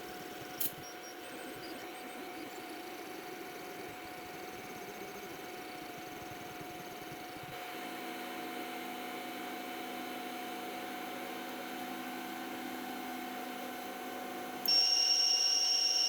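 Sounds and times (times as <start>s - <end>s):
printer motors and fan whine: 0.0s - 16.0s
loud high beep: 14.7s - 16.0s.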